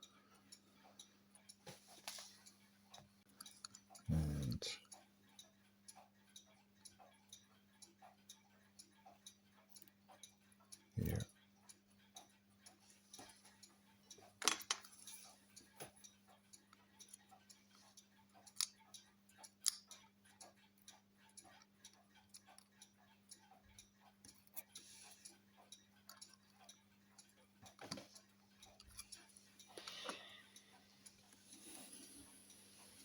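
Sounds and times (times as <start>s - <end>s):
metal parts clicking and tapping: 14.1s - 16.0s, 19.6s - 20.0s.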